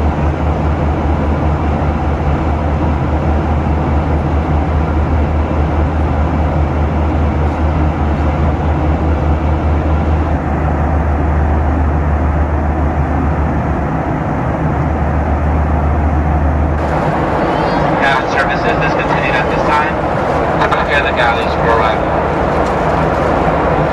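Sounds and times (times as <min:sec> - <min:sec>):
aircraft engine drone: 0:00.0 - 0:23.9
airflow hissing in cabin: 0:16.8 - 0:23.9.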